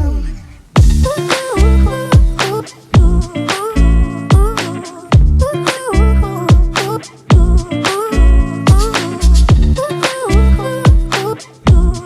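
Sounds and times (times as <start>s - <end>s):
music with heavy bass kicks: 0.8s - 5.5s, 6.5s - 9.8s, 10.4s - 12.0s.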